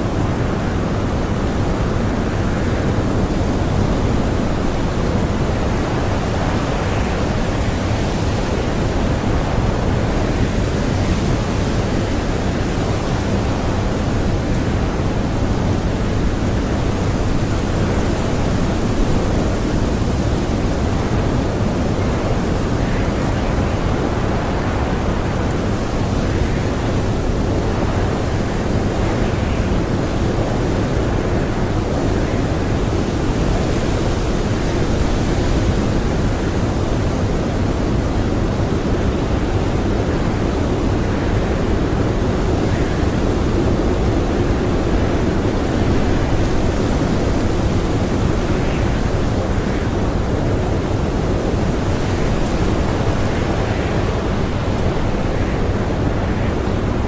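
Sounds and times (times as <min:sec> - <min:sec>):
strong blizzard wind: 0:00.0 - 0:57.0.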